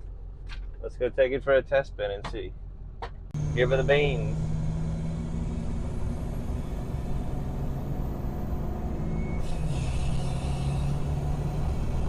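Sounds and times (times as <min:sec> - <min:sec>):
diesel truck engine running: 0:00.0 - 0:12.0
hiss: 0:09.5 - 0:11.0.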